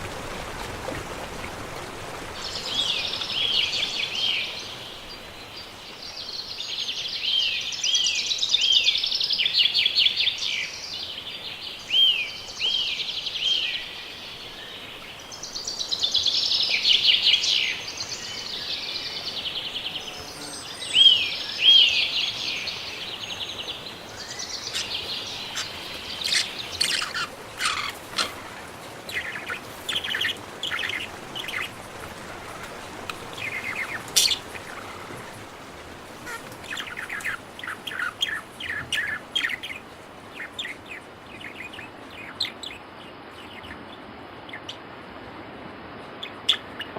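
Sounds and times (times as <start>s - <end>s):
birds chirping and trilling: 2.4s - 44.9s, 46.1s - 46.9s
bird chip calls: 24.2s - 31.7s.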